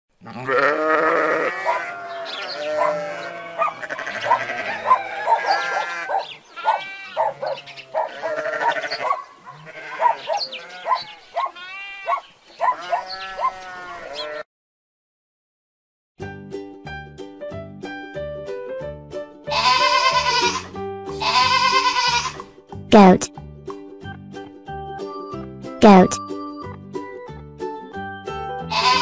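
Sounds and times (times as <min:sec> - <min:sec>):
animals bleating: 0:00.2 - 0:14.4, 0:19.5 - 0:22.4, 0:28.7 - 0:29.0
farm animals calling: 0:00.2 - 0:14.4, 0:19.5 - 0:22.4, 0:28.7 - 0:29.0.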